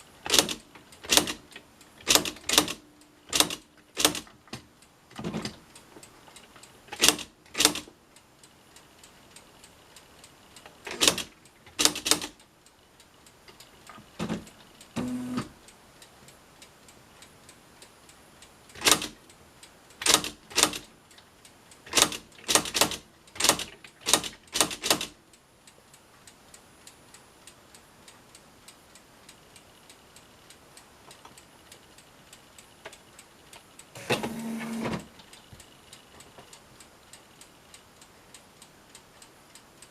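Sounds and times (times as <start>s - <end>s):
typewriter print hammer strikes: 0.3s - 4.6s, 6.9s - 7.9s, 10.9s - 12.4s, 18.8s - 19.2s, 20.0s - 20.9s, 21.9s - 25.2s.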